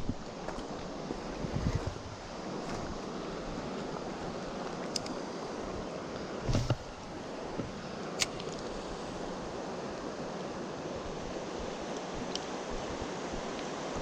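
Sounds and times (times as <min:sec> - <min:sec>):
river current rushing: 0:00.0 - 0:14.0.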